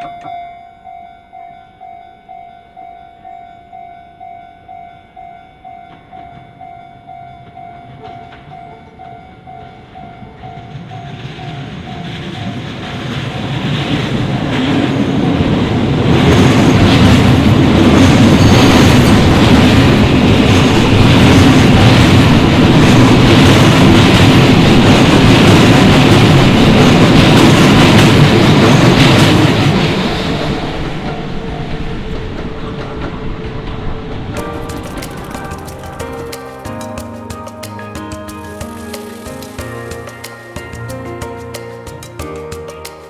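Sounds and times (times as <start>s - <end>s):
level-crossing warning bell ringing: 0.0s - 32.6s
electric train passing: 3.2s - 43.0s.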